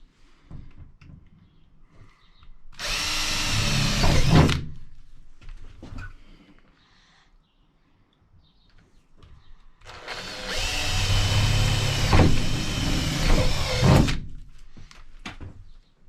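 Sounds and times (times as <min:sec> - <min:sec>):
power drill boring through sheet metal: 0:02.8 - 0:04.6, 0:09.9 - 0:14.2.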